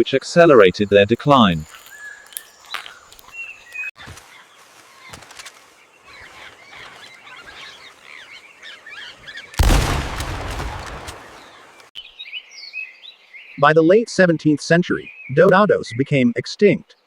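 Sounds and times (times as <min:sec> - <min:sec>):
faint bird chirps: 0:00.7 - 0:09.6.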